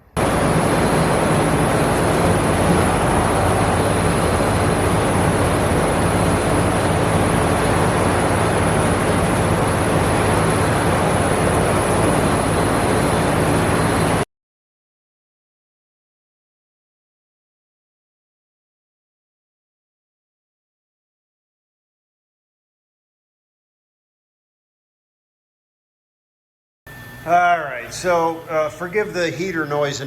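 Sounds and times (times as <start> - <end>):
low hum: 0.0 - 14.2
mechanical roar: 0.0 - 14.2.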